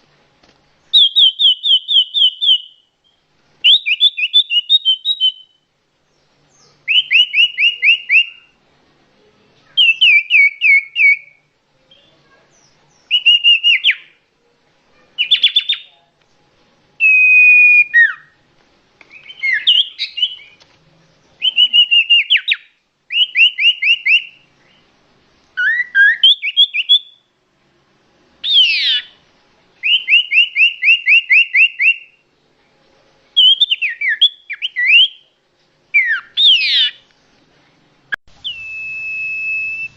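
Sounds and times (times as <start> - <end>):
bird trilled call: 0.9 - 5.6, 28.4 - 29.2, 36.0 - 37.0
whistled bird notes: 0.9 - 8.6, 9.7 - 14.2, 14.9 - 16.0, 17.0 - 18.4, 19.1 - 20.6, 21.4 - 24.9, 25.6 - 27.3, 28.4 - 29.2, 29.8 - 32.2, 33.4 - 35.3, 35.9 - 37.0, 38.4 - 39.9.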